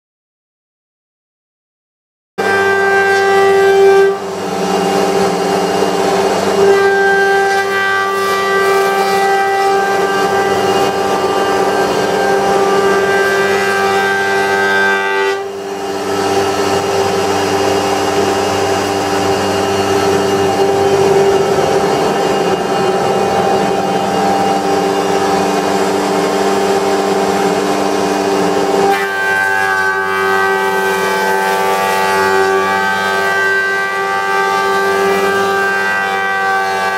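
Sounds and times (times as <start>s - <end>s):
planer whining: 2.4s - 36.9s
rough rushing noise: 16.1s - 28.6s.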